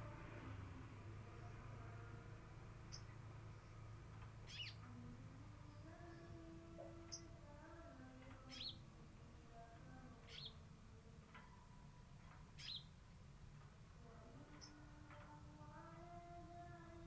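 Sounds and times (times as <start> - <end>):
faint background noise: 0.0 - 17.0
high bird chirp: 4.5 - 4.8, 8.5 - 8.8, 10.3 - 10.6, 12.6 - 12.9.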